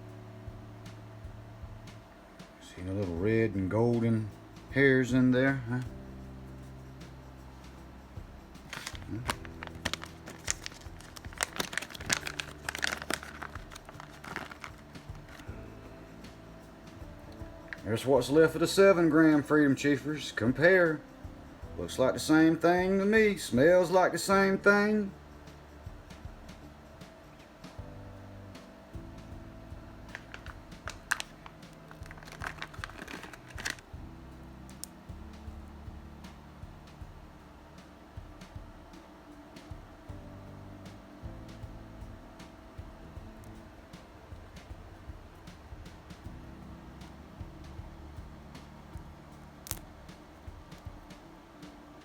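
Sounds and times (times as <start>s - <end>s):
plastic packaging crinkling: 8.7s - 15.4s, 30.1s - 33.8s.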